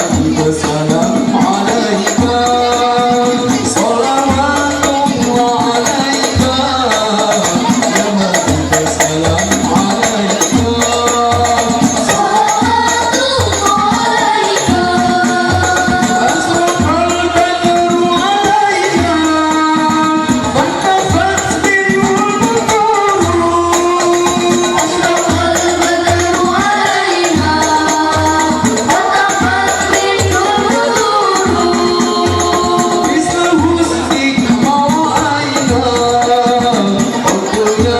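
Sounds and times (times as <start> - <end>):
frame drums beating: 0.0 - 37.9
jingling percussion: 0.0 - 37.9
voices singing together: 0.0 - 37.9.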